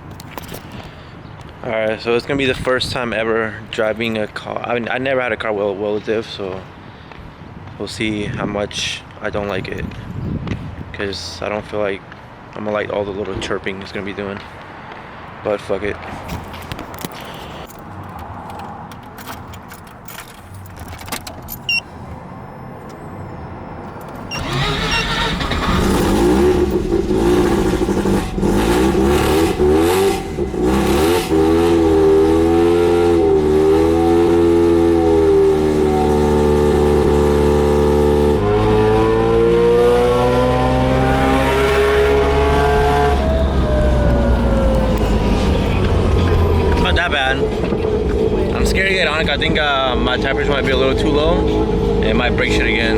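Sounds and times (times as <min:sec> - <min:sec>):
rotary engine revving: 0:24.3 - 0:49.6.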